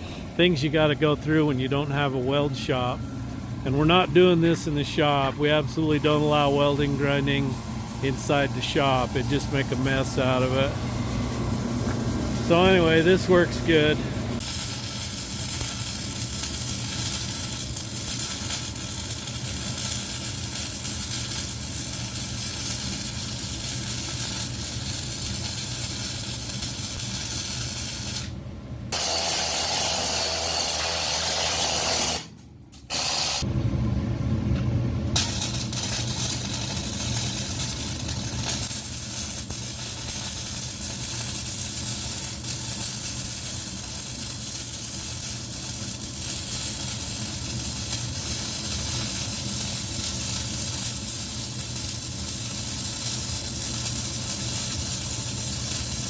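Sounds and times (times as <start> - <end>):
welding arc crackling and hissing: 0.0 - 33.5, 35.1 - 56.0.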